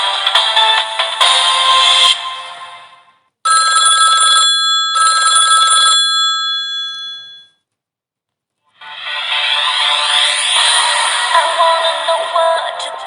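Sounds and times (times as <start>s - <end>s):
telephone bell ringtone: 3.5s - 7.6s.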